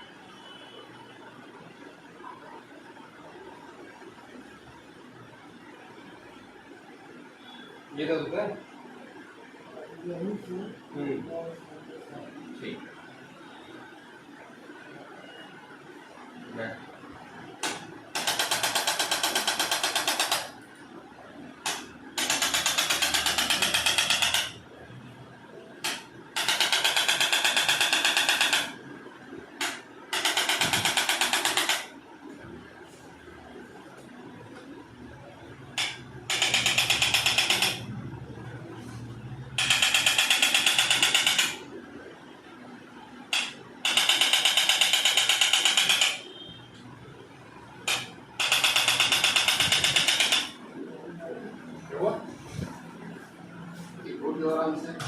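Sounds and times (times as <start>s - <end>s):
electric percussion device pounding: 21.6s - 24.7s, 25.8s - 28.8s, 29.6s - 31.9s, 35.7s - 38.1s, 39.5s - 41.7s, 43.3s - 46.4s, 47.8s - 50.6s.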